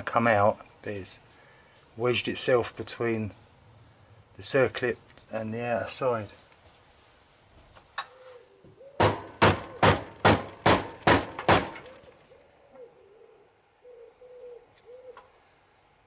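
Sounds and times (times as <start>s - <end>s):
sharp knocks on metal: 9.0s - 12.0s.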